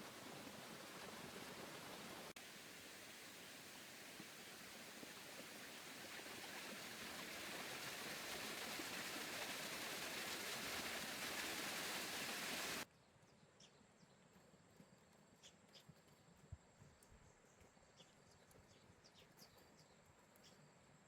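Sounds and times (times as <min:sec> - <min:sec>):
rushing water: 0:00.0 - 0:12.9.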